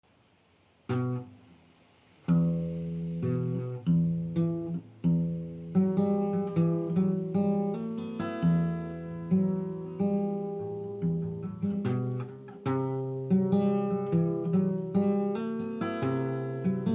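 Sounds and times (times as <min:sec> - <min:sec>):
guitar chords ringing: 0:02.3 - 0:16.9.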